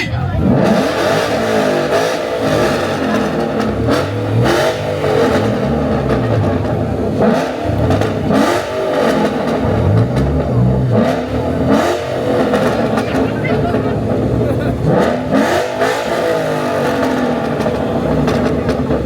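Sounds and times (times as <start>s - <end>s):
car engines revving hard: 0.0s - 19.0s.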